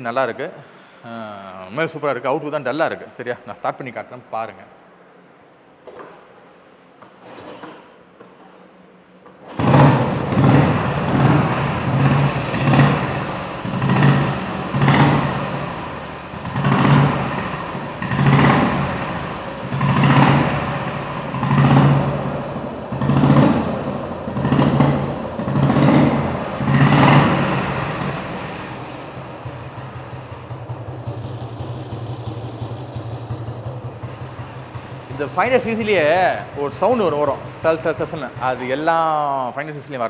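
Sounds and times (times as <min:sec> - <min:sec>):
motorcycle engine revving: 0:09.4 - 0:39.4
light engine rattling: 0:09.4 - 0:39.8.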